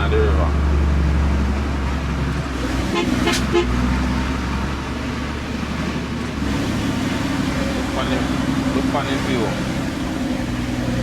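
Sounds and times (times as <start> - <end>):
truck engine running: 0.0 - 11.0
truck horn toot: 2.8 - 3.9.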